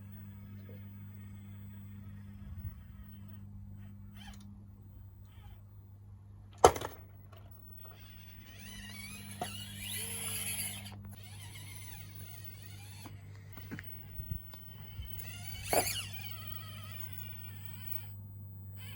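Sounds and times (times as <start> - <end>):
low steady hum: 0.0 - 18.9
hissy whirring: 7.8 - 18.2.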